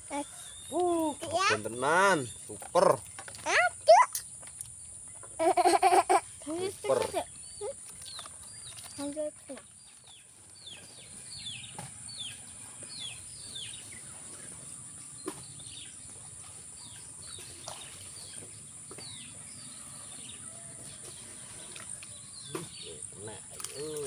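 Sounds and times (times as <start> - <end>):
bird chirping: 6.5 - 24.0.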